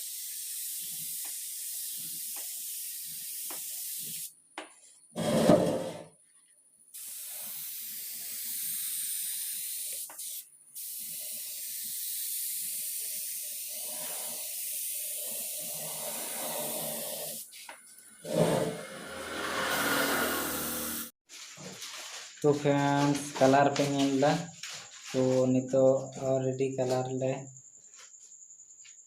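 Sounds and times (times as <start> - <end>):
paint spray gun hissing: 0.0 - 4.3, 7.0 - 17.7, 20.4 - 21.1.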